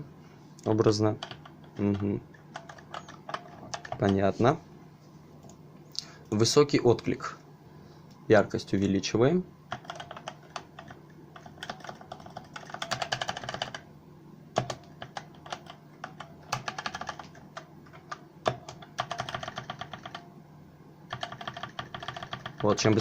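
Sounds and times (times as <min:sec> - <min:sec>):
mechanical keyboard keystrokes: 0:01.2 - 0:04.2, 0:09.7 - 0:13.8, 0:14.6 - 0:20.2, 0:21.1 - 0:23.0.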